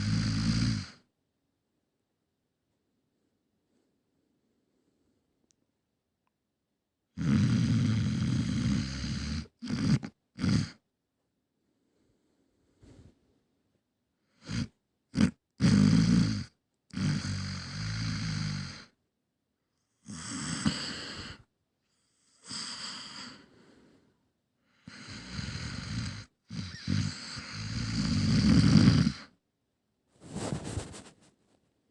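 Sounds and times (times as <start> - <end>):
person snoring: 0.0 - 1.1, 7.2 - 10.8, 14.3 - 19.0, 20.0 - 21.5, 22.3 - 24.1, 24.8 - 29.4.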